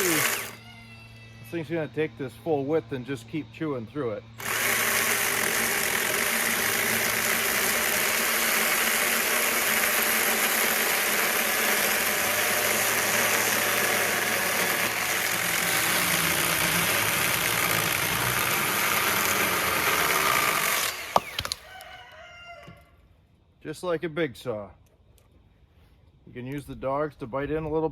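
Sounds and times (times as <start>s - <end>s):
chain saw cutting log: 0.0s - 0.7s, 4.4s - 22.0s
saw stopping click: 4.4s - 21.6s.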